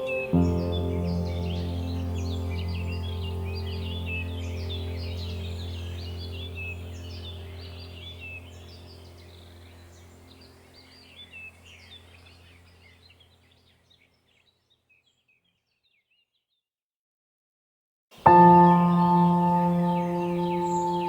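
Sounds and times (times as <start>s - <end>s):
birds chirping: 0.0s - 16.4s, 18.2s - 21.0s
steady low hum: 0.4s - 13.0s.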